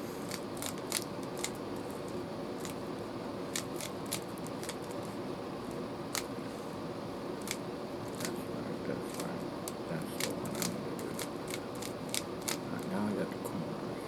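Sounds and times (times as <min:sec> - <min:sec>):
low background hum: 0:00.0 - 0:14.0
puzzle cube plastic clicks: 0:10.2 - 0:12.6.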